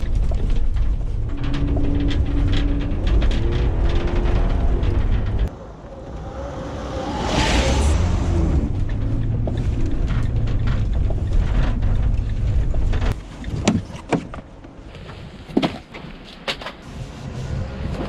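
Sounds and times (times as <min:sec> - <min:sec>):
knocks and clunks: 0:00.0 - 0:05.6, 0:08.1 - 0:16.8
van engine rumbling: 0:00.0 - 0:18.0.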